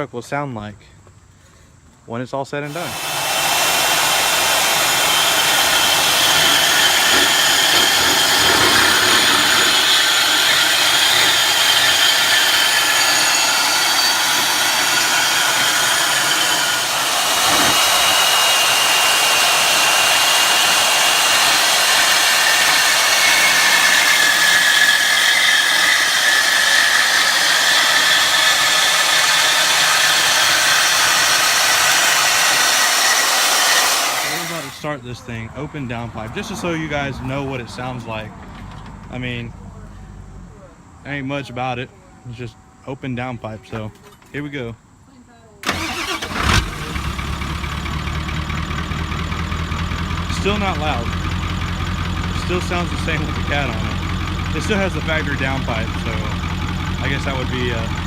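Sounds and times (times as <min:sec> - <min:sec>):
power tool grinding metal pipe: 0:02.7 - 0:34.9, 0:45.6 - 0:58.0.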